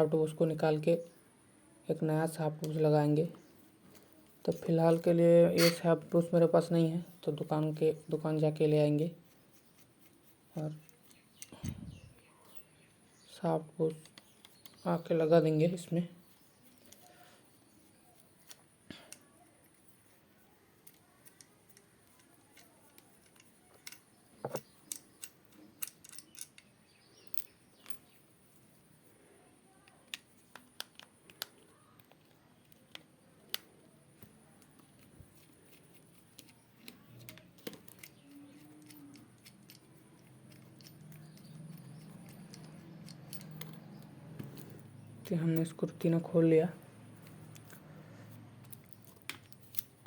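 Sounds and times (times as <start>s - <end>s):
screwdriver and metal parts clicking: 9.2s - 12.6s, 16.7s - 17.2s, 20.8s - 28.3s, 29.8s - 46.2s, 47.2s - 47.8s, 48.6s - 50.0s.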